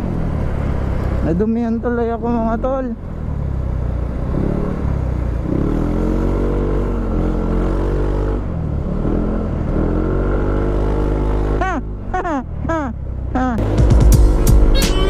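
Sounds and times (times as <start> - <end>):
scooter engine running: 0.0 - 7.3
wind and road noise: 0.0 - 15.0.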